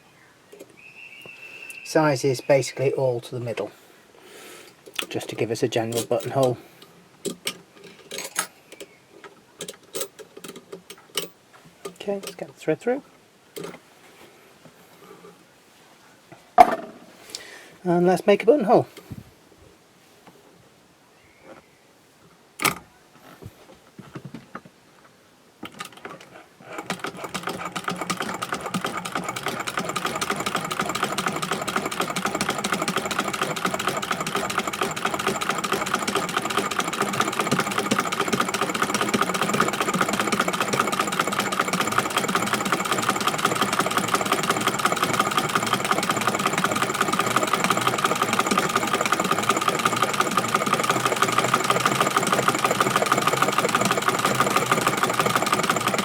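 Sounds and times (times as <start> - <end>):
sewing machine stitching: 25.6 - 56.0.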